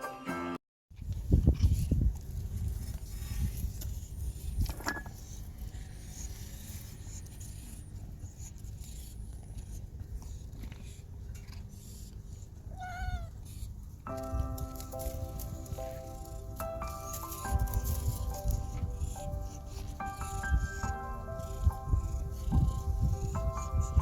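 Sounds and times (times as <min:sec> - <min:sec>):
steady low rumble: 0:05.3 - 0:24.0
cat meowing: 0:12.7 - 0:13.4.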